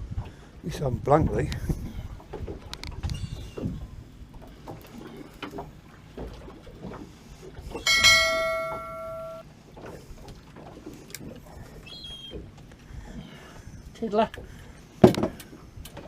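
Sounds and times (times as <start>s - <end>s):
struck metal ringing: 7.9s - 9.4s.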